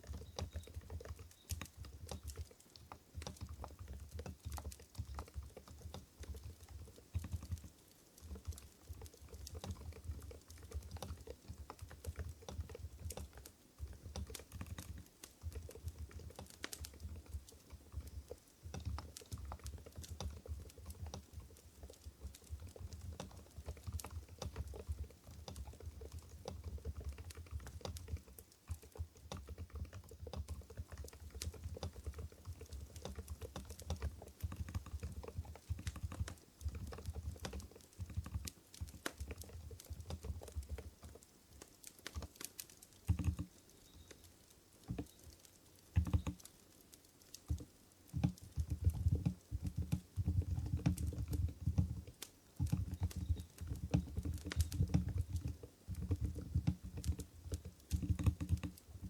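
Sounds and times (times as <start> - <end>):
fast typing on keyboard: 0.0 - 59.0.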